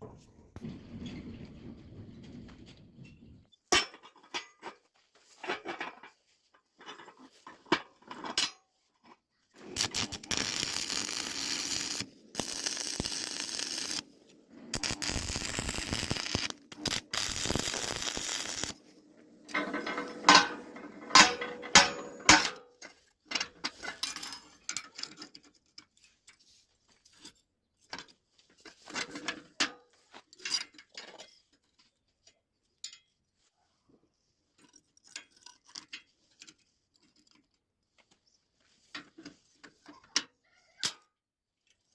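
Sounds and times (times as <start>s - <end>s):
loud metal clanks and rattles: 19.5s - 22.6s.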